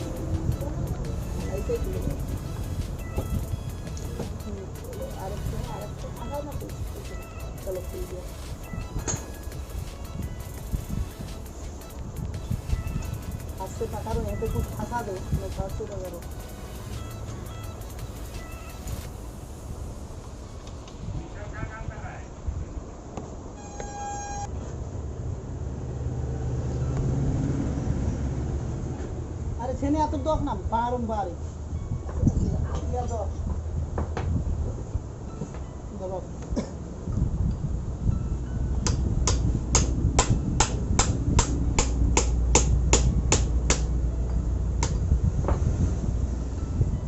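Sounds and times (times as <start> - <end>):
vehicle engine passing: 0.0 - 20.6, 24.5 - 29.8
short pitched beep: 23.6 - 24.5
hammer tapping on metal: 38.8 - 43.9.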